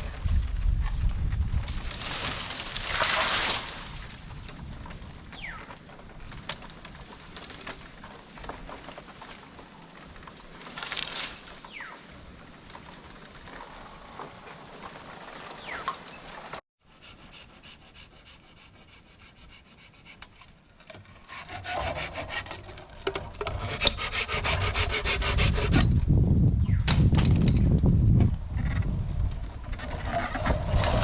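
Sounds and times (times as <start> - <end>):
hand saw cutting wood: 17.0 - 25.9.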